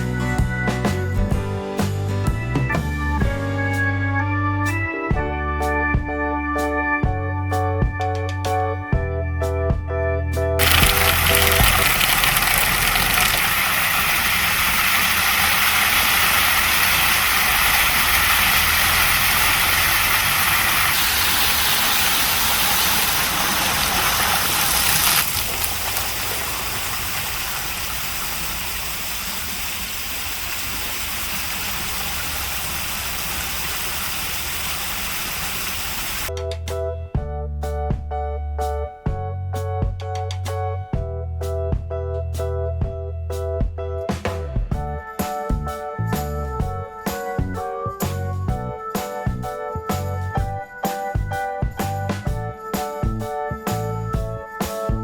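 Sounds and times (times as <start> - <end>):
steady rushing noise: 10.6 - 36.3.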